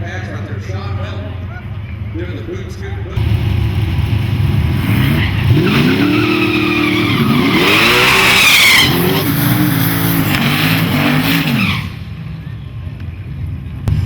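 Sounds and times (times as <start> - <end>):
race car engine shifting gears: 3.2 - 12.0.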